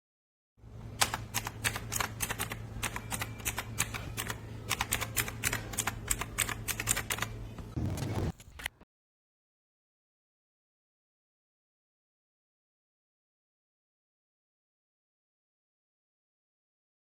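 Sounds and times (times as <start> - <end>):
clicky keyboard typing: 1.0 - 7.3.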